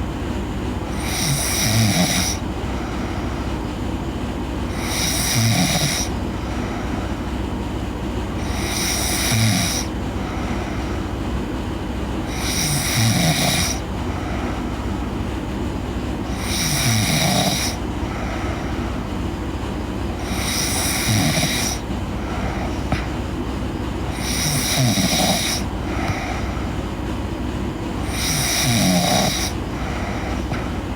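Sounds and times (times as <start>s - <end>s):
girl snoring: 1.0s - 2.4s, 4.7s - 6.2s, 8.4s - 10.6s, 12.2s - 13.8s, 16.3s - 18.7s, 20.2s - 23.1s, 24.1s - 26.6s, 28.1s - 30.8s.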